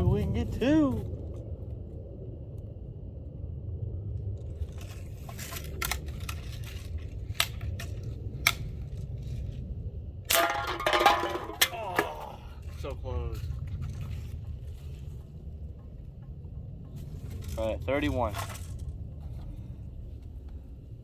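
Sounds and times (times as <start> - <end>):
low steady rumble: 0.0 - 21.0
bb gun clicks and snaps: 7.3 - 8.7.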